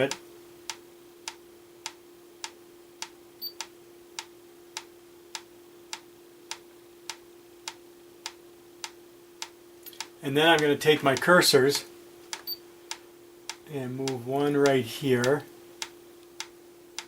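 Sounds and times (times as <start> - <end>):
faint hum: 0.0 - 17.0
metronome ticking: 0.1 - 11.5, 12.3 - 17.0.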